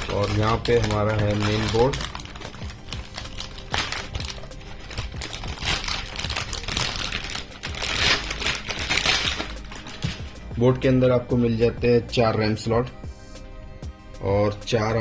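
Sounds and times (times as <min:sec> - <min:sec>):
packaging rustling: 0:00.0 - 0:10.7.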